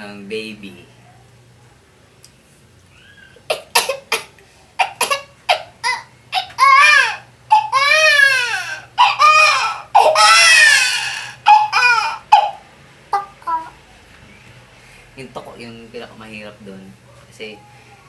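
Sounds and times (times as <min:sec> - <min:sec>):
man imitating baby crying: 0:04.8 - 0:13.8.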